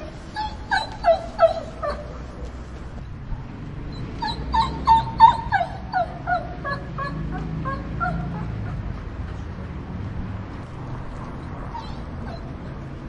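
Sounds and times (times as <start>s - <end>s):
dog whimpering: 0.0s - 2.3s, 3.9s - 8.8s, 11.7s - 12.8s.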